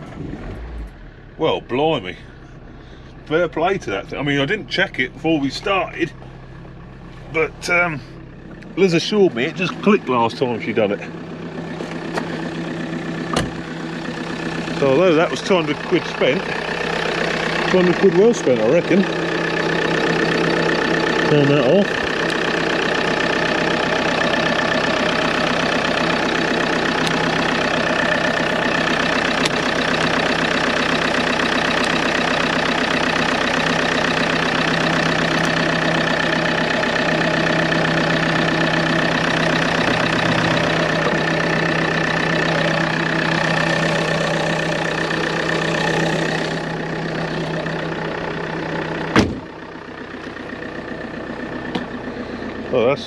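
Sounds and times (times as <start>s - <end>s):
van engine idling: 0.0s - 53.0s
sharp thump: 13.3s - 13.6s, 49.1s - 49.5s.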